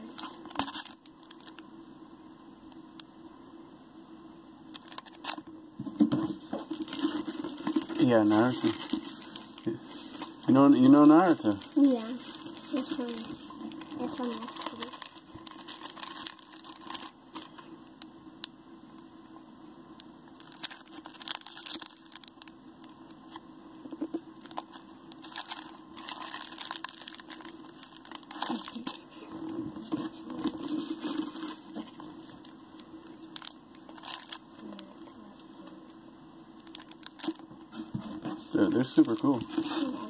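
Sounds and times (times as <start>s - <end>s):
plastic packaging crinkling and tearing: 0.0s - 1.6s, 4.7s - 18.0s, 20.3s - 29.0s, 29.8s - 34.9s, 36.6s - 40.0s.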